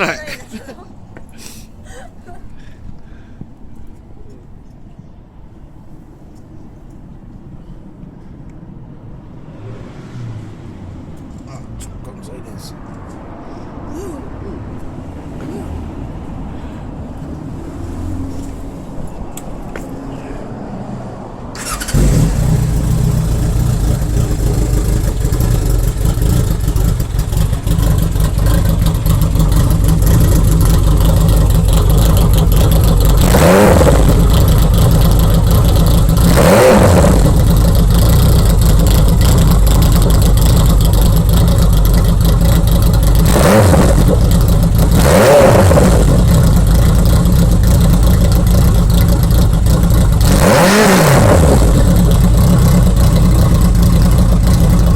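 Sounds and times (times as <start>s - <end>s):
motorcycle engine starting and idling: 21.5s - 54.9s
motorcycle engine revving: 21.6s - 54.9s.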